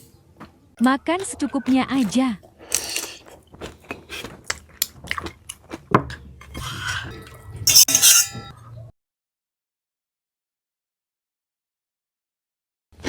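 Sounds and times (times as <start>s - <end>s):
cutlery clinking on a plate: 7.7s - 8.5s.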